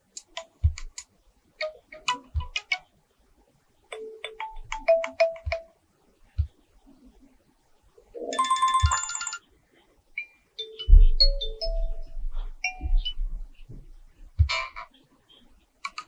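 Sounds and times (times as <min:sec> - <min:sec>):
bright chiming ringtone: 0:08.3 - 0:09.4, 0:10.6 - 0:13.2
electronic ringtone melody with bass: 0:08.3 - 0:09.4, 0:10.2 - 0:13.2.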